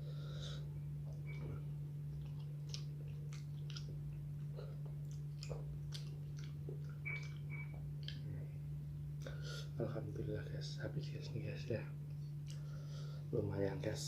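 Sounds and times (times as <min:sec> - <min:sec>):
low hum: 0:00.0 - 0:14.0
person chewing food: 0:00.5 - 0:09.4, 0:12.1 - 0:12.9.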